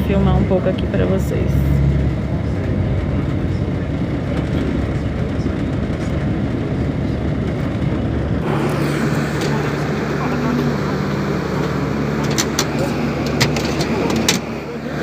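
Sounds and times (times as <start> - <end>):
bus engine and road rumble: 0.0 - 15.0.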